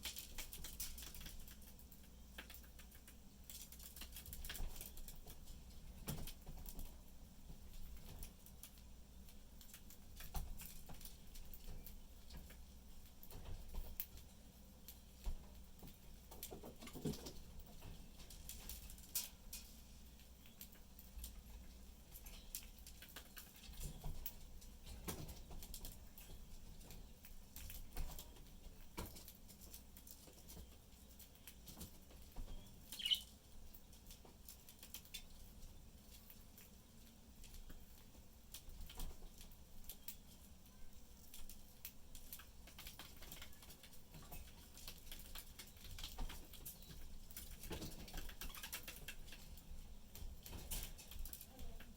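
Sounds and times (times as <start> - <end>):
budgerigar chirp: 32.6 - 33.3.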